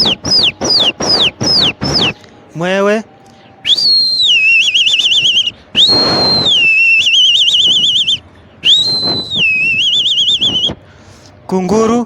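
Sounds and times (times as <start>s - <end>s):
man whistling bird call: 0.0s - 2.2s, 3.6s - 10.8s.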